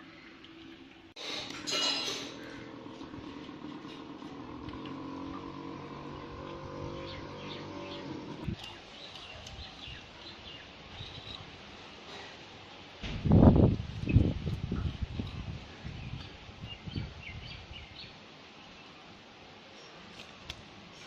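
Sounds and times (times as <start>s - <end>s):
engine-like hum: 0.4s - 8.7s
small birds chirping: 5.6s - 11.5s, 14.0s - 19.1s.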